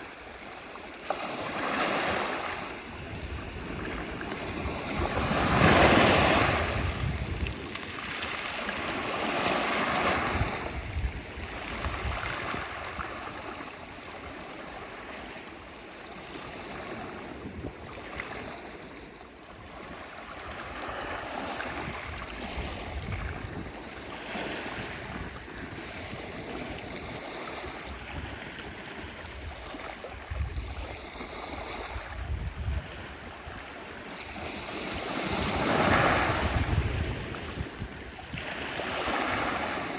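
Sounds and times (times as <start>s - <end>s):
sea waves breaking: 0.0s - 13.7s, 18.0s - 39.9s
wind buffeting microphone: 2.8s - 9.3s, 10.0s - 13.4s, 21.7s - 24.0s, 24.6s - 33.6s, 34.8s - 39.9s.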